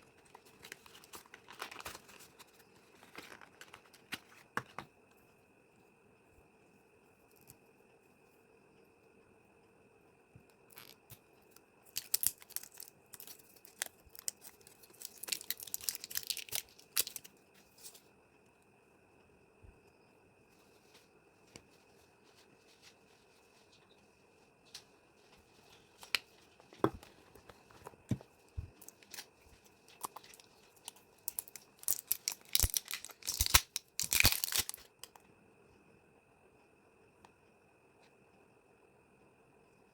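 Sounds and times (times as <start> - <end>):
packaging torn and crinkled: 0.3 - 4.4, 11.9 - 17.3, 28.8 - 29.3, 29.9 - 35.1.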